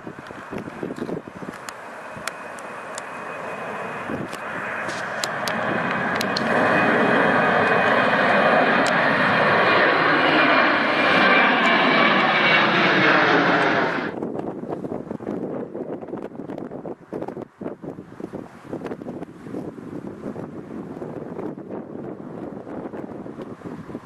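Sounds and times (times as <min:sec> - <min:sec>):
high engine whine: 0:00.0 - 0:19.7
jet airliner engines: 0:00.0 - 0:24.0.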